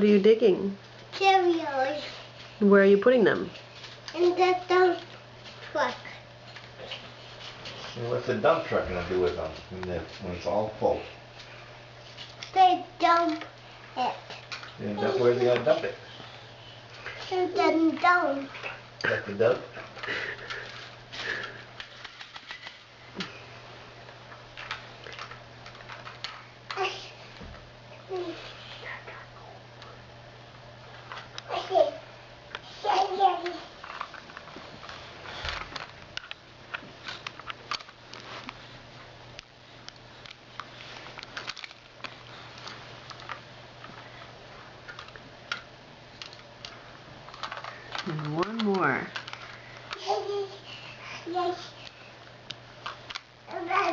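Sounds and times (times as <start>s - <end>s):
faint steady hum: 0.0s - 53.9s
dry cereal clicking and rattling: 24.5s - 27.0s, 39.4s - 50.9s
plastic toy backhoe rattling: 47.3s - 50.1s.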